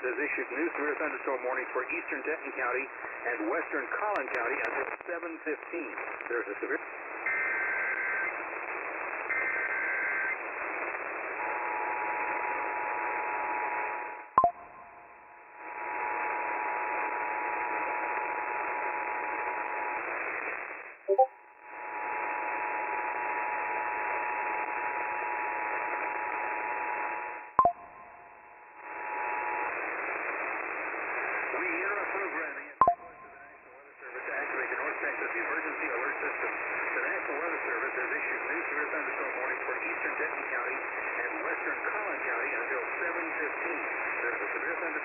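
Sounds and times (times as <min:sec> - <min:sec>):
radio static hiss: 0:00.0 - 0:13.9, 0:28.9 - 0:32.8, 0:33.7 - 0:45.0
two-tone attention signal: 0:21.1 - 0:21.3, 0:27.6 - 0:28.3, 0:32.8 - 0:33.4.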